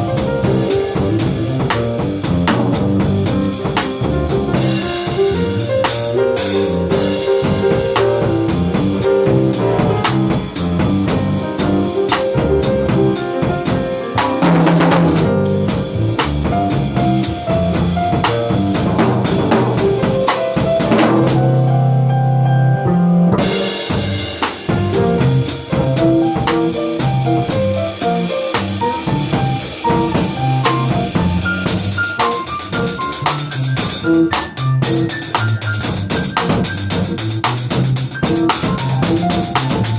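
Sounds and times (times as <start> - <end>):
drum kit playing funk groove: 0.0 - 21.6, 23.2 - 39.9
bass line: 0.0 - 39.9.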